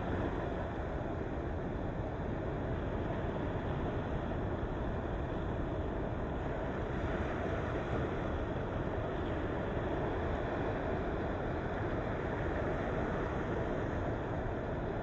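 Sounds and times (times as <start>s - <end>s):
ocean waves on shore: 6.3s - 15.0s.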